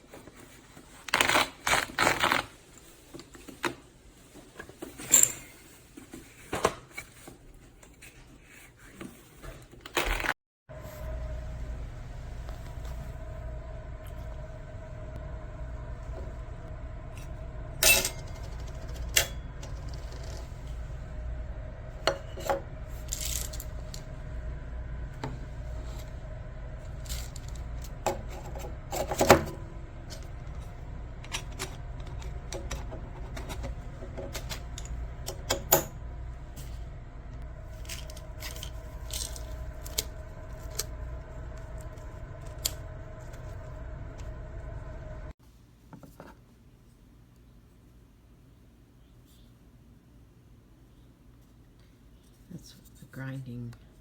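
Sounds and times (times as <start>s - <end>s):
coffee grinder motor humming: 10.7s - 45.3s.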